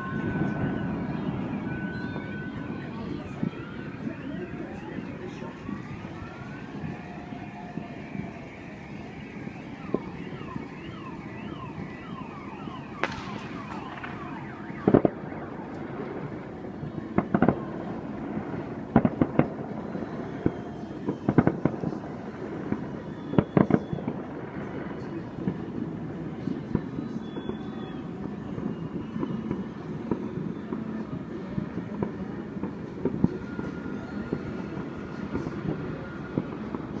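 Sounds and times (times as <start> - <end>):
car alarm warbling: 0.0 - 16.4
fireworks bangs: 0.0 - 37.0.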